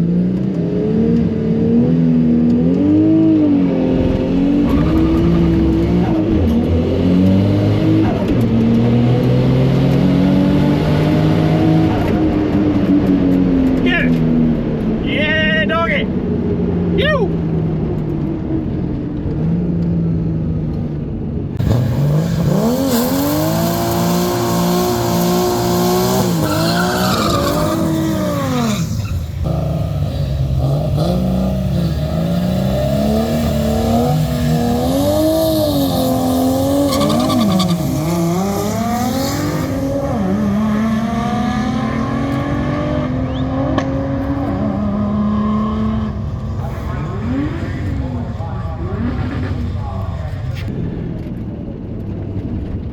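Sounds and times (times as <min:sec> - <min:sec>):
car engine revving hard: 0:00.0 - 0:13.8, 0:21.6 - 0:50.7
tyre squeal: 0:21.6 - 0:31.1, 0:33.7 - 0:39.9.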